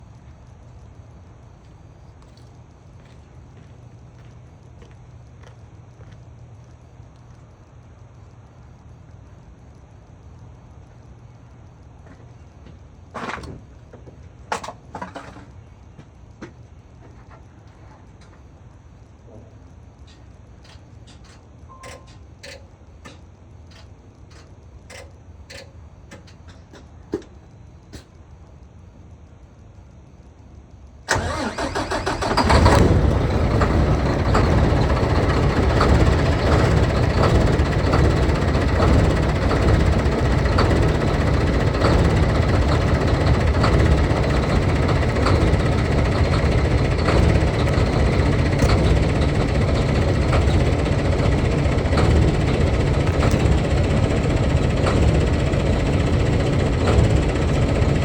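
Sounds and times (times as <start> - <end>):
diesel truck engine idling: 31.1 - 58.0
starter motor cranking: 31.1 - 58.0.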